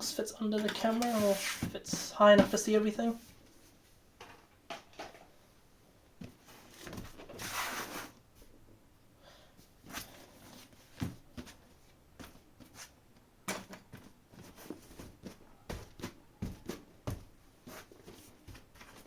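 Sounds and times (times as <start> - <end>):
box sliding and rustling: 0.7 - 2.0, 6.4 - 8.2.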